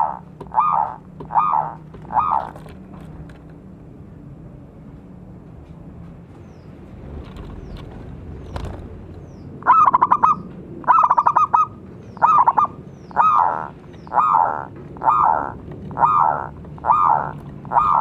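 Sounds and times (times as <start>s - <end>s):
dove staccato cooing: 0.0s - 3.2s, 8.4s - 18.0s.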